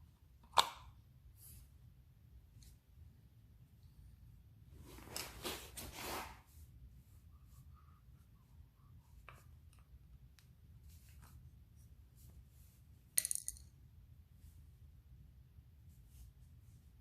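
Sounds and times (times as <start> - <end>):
metal object clinking: 13.2 - 13.7.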